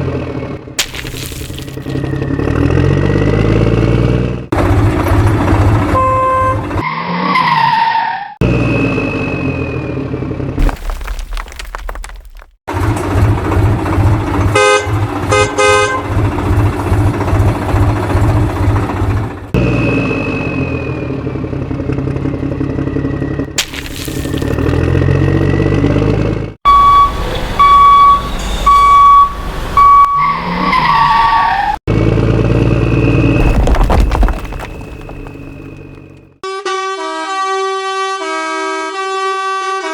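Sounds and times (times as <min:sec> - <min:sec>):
truck horn honks: 0:05.9 - 0:06.8, 0:14.5 - 0:16.2, 0:36.4 - 0:39.9
diesel engine chugging: 0:12.7 - 0:23.6.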